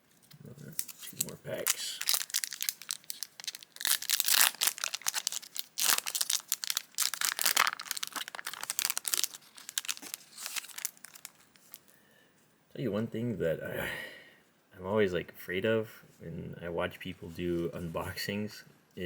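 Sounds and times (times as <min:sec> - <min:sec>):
foil wrapper crinkling and tearing: 0:00.2 - 0:11.9.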